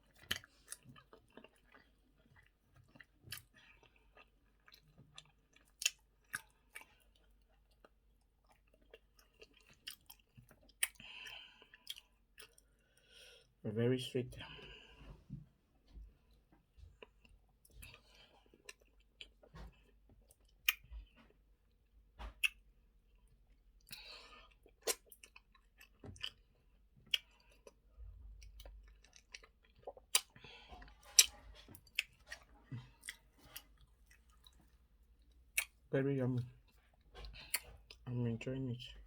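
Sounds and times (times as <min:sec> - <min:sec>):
person chewing food: 0:00.0 - 0:13.6, 0:14.4 - 0:38.1.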